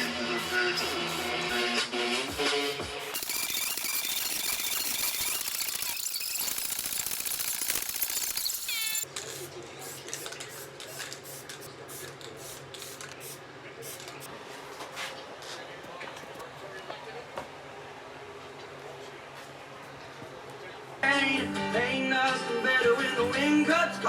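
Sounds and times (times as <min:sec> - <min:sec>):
background music: 0:21.0 - 0:24.0.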